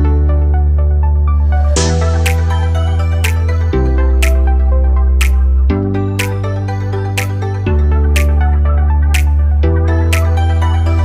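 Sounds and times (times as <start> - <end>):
synthesizer bass chord: 0.0 - 11.0.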